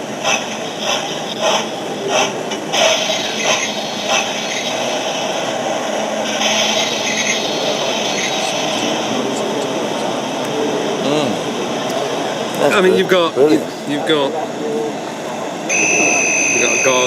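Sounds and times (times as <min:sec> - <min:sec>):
steady steam hiss: 0:00.0 - 0:13.3
steam locomotive chuffs: 0:00.0 - 0:17.0.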